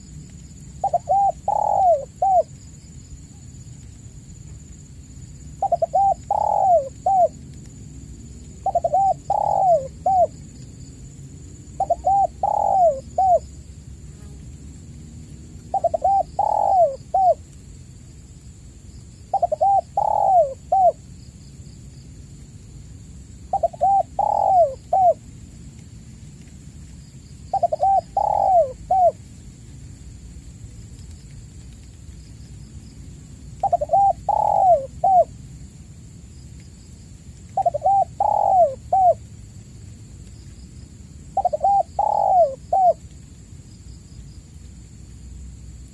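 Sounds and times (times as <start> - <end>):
dove cooing: 0.8 - 2.5, 5.6 - 7.3, 8.6 - 10.4, 11.8 - 13.4, 15.7 - 17.5, 19.3 - 21.0, 23.5 - 25.2, 27.5 - 29.2, 33.6 - 35.3, 37.6 - 39.2, 41.4 - 43.1.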